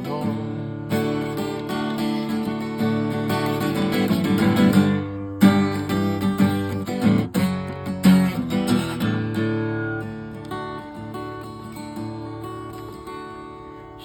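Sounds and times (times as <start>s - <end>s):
acoustic guitar strumming chords: 0.0s - 14.0s.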